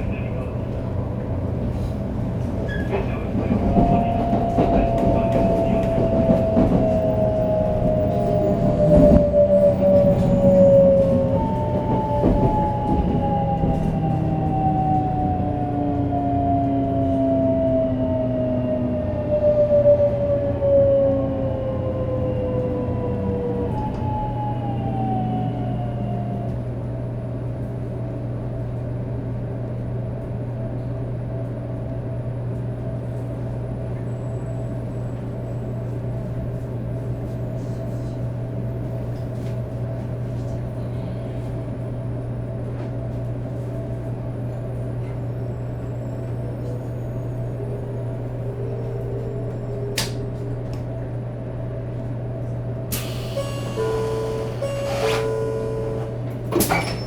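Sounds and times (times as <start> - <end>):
low hum inside train car: 0.0 - 57.0.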